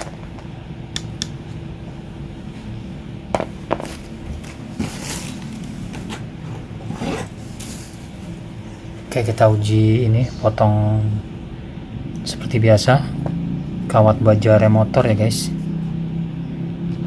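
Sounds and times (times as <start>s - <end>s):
steady low hum: 0.0s - 17.0s
hand tools and wire clicking: 1.0s - 1.4s.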